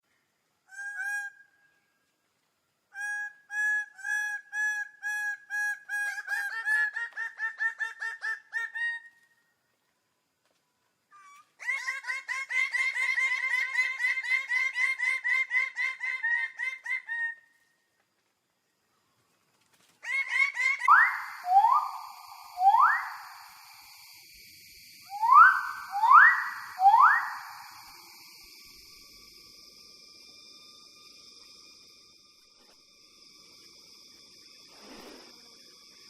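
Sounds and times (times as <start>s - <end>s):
bird calling repeated notes: 20.0s - 24.0s, 25.1s - 28.3s.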